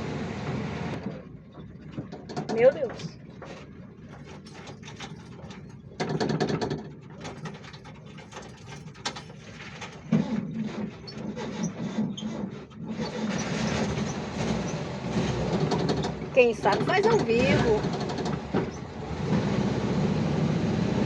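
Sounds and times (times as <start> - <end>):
engine ticking and rattle: 0.0 - 21.0.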